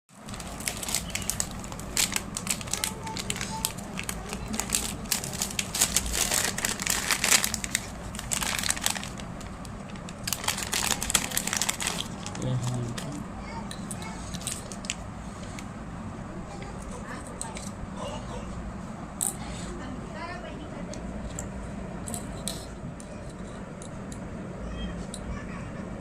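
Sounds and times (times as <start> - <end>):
plastic wrap and cardboard crinkling: 0.2 - 13.2.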